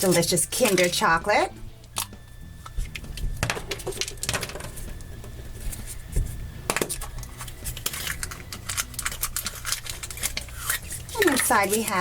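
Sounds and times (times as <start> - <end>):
foil wrapper crackling: 7.0 - 12.0.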